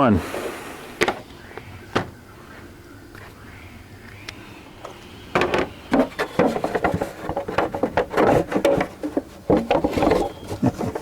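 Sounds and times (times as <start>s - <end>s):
rubbing and rustling of objects: 4.8s - 11.0s.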